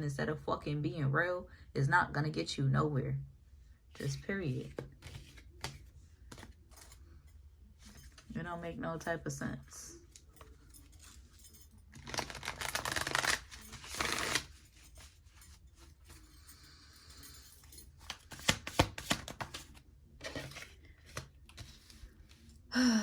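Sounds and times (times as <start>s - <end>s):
cards shuffling: 4.0s - 7.0s, 12.0s - 16.2s, 18.0s - 22.5s
card clicks and taps: 18.1s - 19.7s.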